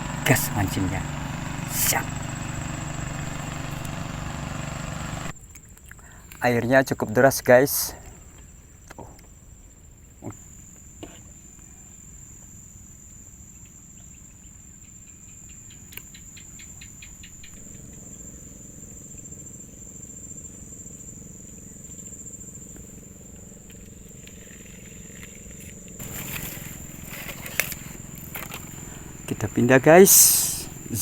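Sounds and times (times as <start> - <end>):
low steady hum: 0.0 - 5.3
high-pitched insect trill: 13.8 - 31.0.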